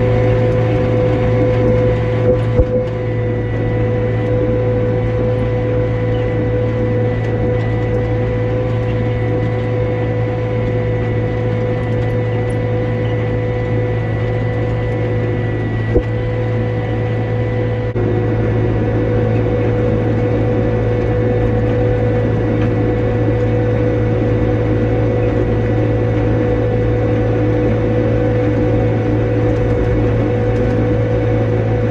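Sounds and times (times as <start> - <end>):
steady whine: 0.0 - 31.9
tractor engine running: 0.0 - 31.9.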